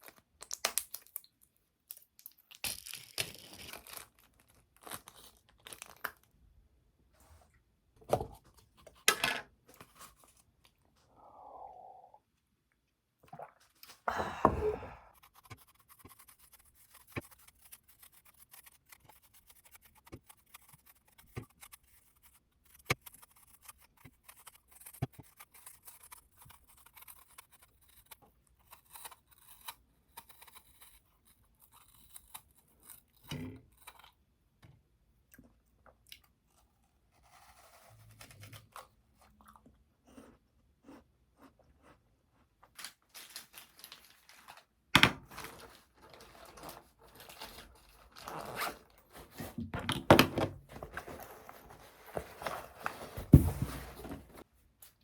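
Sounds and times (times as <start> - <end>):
small handling clicks and scrapes: 15.2 - 34.2.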